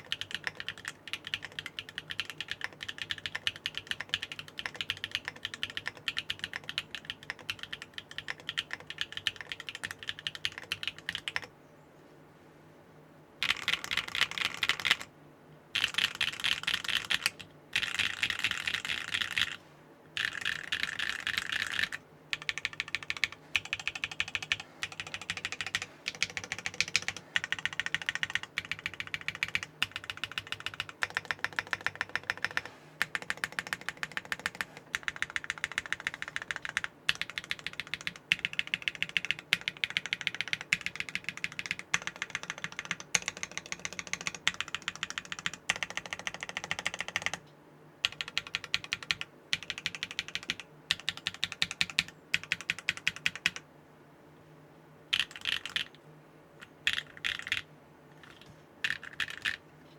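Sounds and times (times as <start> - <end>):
mechanical keyboard typing: 0.0 - 11.5, 13.4 - 15.1, 15.8 - 19.6, 20.2 - 47.4, 48.0 - 53.6, 55.1 - 56.0, 56.6 - 57.6, 58.2 - 59.6.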